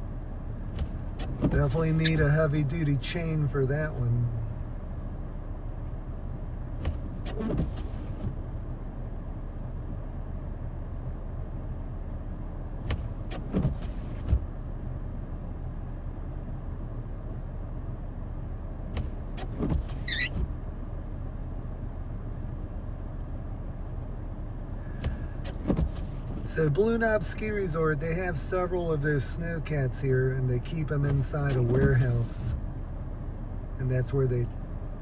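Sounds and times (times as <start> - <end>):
high squeak: 20.0 - 20.4.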